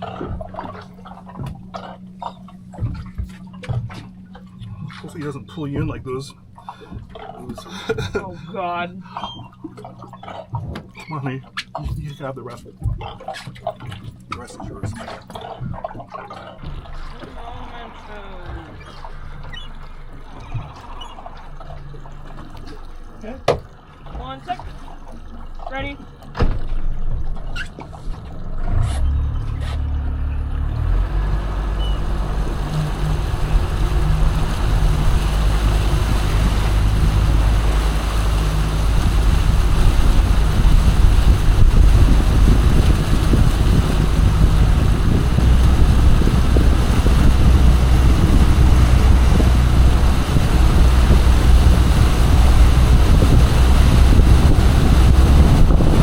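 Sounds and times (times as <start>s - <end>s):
motorboat engine droning: 0.0s - 56.0s
wind and water rushing: 0.0s - 56.0s.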